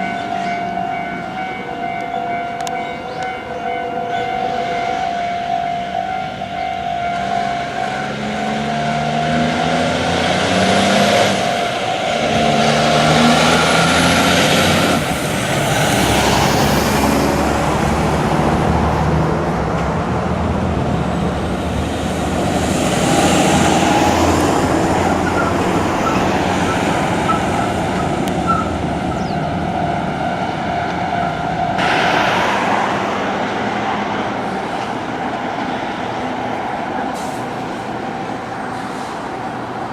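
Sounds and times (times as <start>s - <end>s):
trucks passing with tyre noise: 0.0s - 39.9s
diesel truck engine accelerating: 7.7s - 31.0s
air brake hiss: 37.1s - 37.6s, 38.7s - 39.3s.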